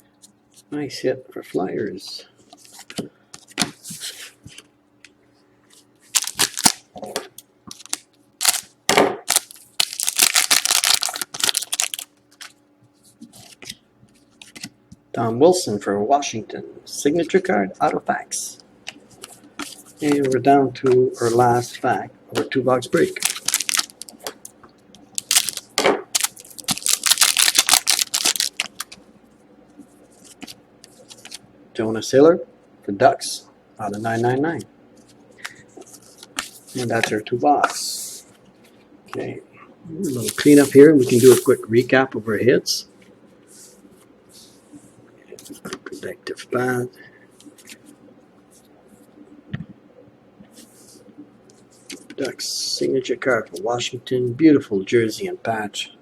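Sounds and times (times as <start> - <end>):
foil wrapper crinkling: 6.1 - 6.8, 7.7 - 12.6, 23.0 - 24.3, 25.1 - 29.0, 40.1 - 41.6.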